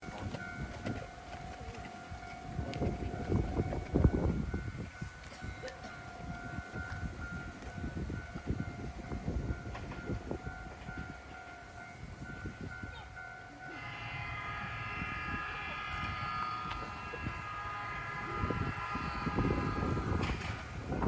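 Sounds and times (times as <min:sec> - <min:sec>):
train whine of high tones: 0:00.0 - 0:21.0
faint pulsing high tone: 0:11.9 - 0:21.0
low rumbling: 0:13.4 - 0:21.0.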